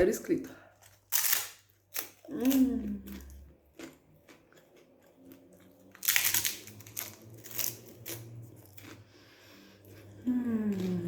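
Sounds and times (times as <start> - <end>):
biscuit crunching: 0.8 - 9.1.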